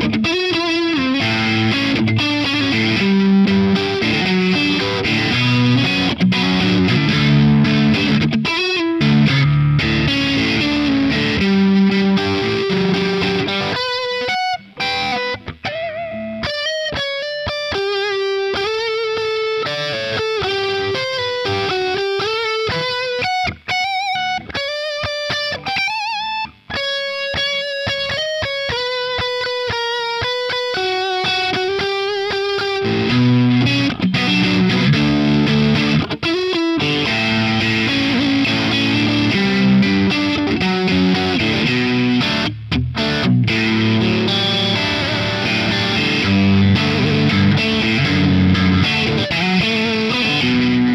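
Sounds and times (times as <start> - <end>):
distorted electric guitar: 0.0 - 50.9.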